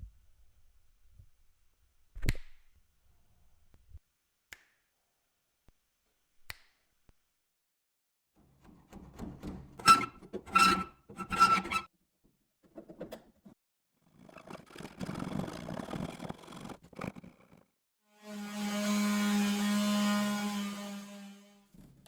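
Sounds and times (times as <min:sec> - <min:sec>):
squeaky scraping strokes: 0:09.8 - 0:11.9.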